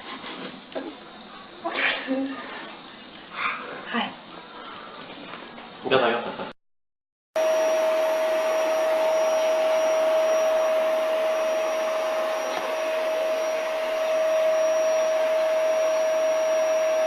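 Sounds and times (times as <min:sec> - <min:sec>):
vacuum cleaner running: 0:07.4 - 0:17.0.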